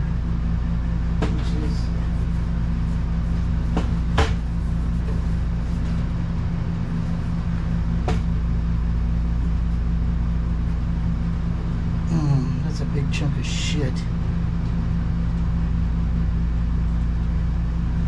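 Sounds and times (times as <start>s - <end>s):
low mechanical hum: 0.0s - 18.0s
sharp knocks of parts: 3.6s - 5.2s.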